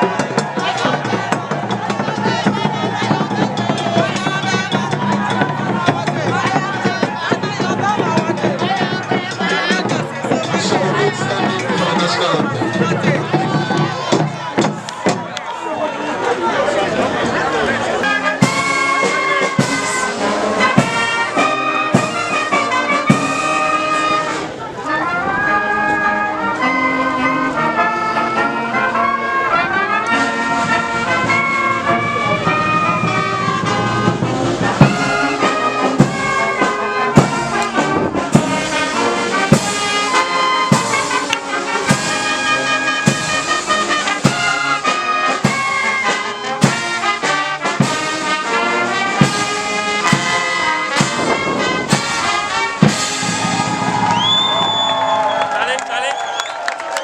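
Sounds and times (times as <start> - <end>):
drum beat: 0.0 - 15.4, 18.0 - 23.8, 31.9 - 55.2
brass band playing: 0.0 - 55.8.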